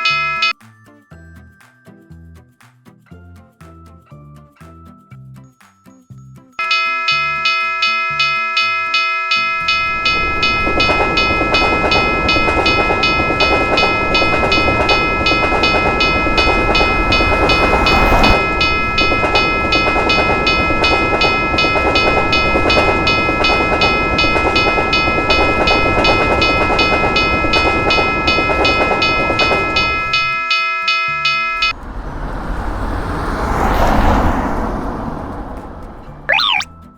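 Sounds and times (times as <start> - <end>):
railroad crossing bell ringing: 0.0 - 0.6, 6.6 - 31.8
train wheels rumbling over rails: 9.6 - 30.3.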